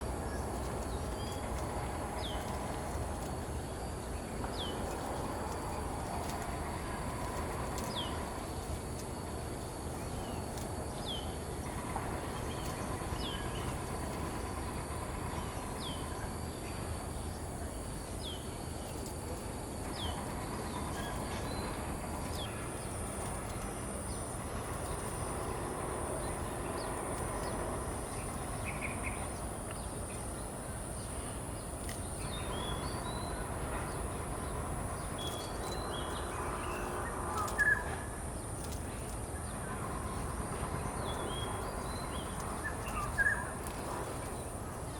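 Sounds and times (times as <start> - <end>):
low background rumble: 0.0 - 44.9
birds chirping: 19.8 - 44.6.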